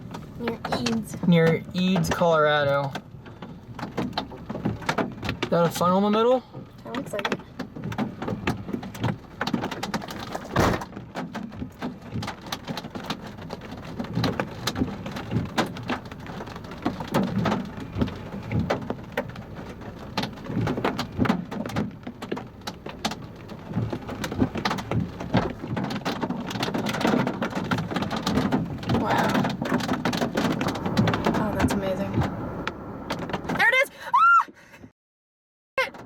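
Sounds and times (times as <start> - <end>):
raindrops tapping on car: 0.0 - 34.1
steady low rumble: 13.3 - 33.6.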